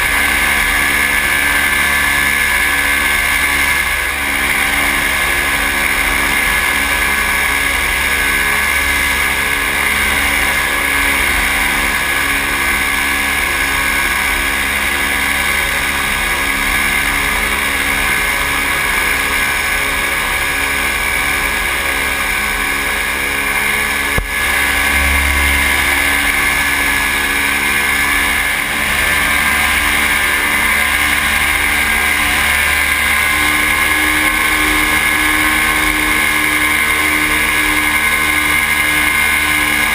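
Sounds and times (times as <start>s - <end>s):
paramotor engine and propeller: 0.0s - 39.9s.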